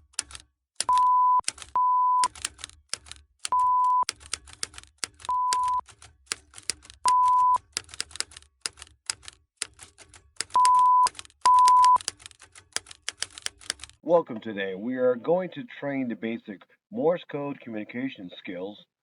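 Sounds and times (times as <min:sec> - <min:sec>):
morse code beeps: 0:00.9 - 0:02.3, 0:03.5 - 0:04.1, 0:05.3 - 0:05.8, 0:07.1 - 0:07.6, 0:10.6 - 0:12.0
rapid mechanical clicking: 0:05.9 - 0:07.0, 0:12.0 - 0:14.0.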